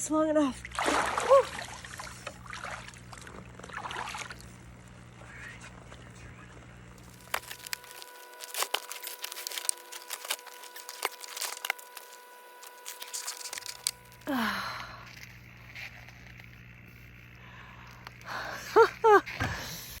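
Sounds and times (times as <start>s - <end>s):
zing of cracking ice: 7.0s - 14.3s
ice crackling and snapping: 7.0s - 16.6s.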